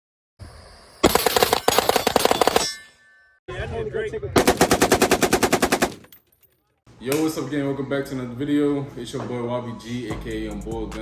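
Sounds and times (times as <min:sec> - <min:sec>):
automatic gunfire bursts: 0:04.4 - 0:06.1.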